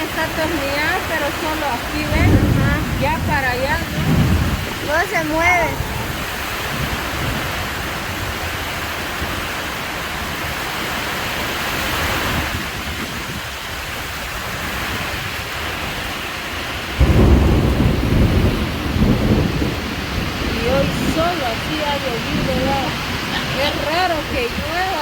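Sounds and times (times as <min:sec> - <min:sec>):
thunder rumbling: 0:00.0 - 0:09.6, 0:16.8 - 0:25.0
heavy rain and wind: 0:00.0 - 0:25.0.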